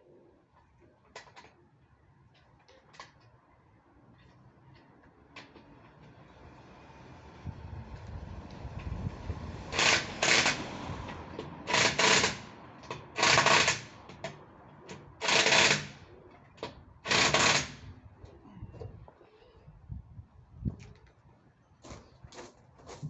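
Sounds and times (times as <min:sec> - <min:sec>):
impact wrench bursts: 0:09.7 - 0:10.8, 0:11.6 - 0:14.3, 0:15.2 - 0:16.0, 0:17.0 - 0:17.9.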